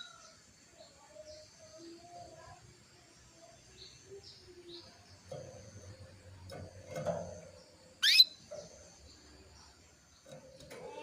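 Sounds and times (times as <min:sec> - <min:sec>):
canary chirping: 0:03.6 - 0:11.0.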